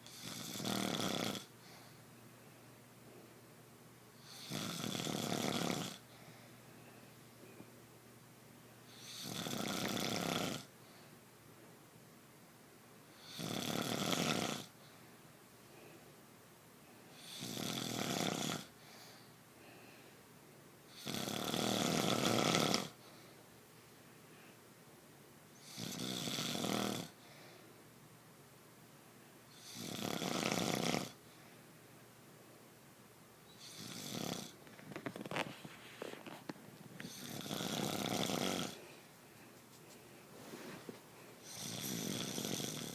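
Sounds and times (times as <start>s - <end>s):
person snoring: 0.0s - 1.5s, 4.2s - 6.0s, 8.9s - 10.7s, 13.2s - 14.7s, 17.1s - 18.7s, 20.9s - 23.0s, 25.6s - 27.2s, 29.5s - 31.2s, 33.6s - 34.6s, 37.0s - 38.9s, 41.4s - 42.9s.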